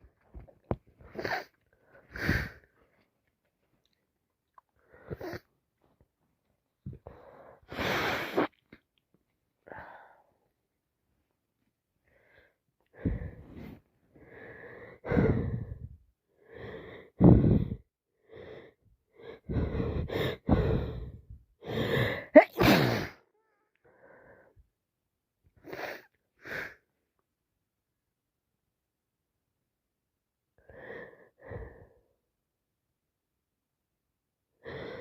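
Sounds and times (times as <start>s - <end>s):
wheezy gasping breaths: 1.0s - 3.0s, 7.0s - 8.6s, 12.1s - 23.2s, 34.6s - 35.0s
woman sneezing: 22.4s - 23.2s.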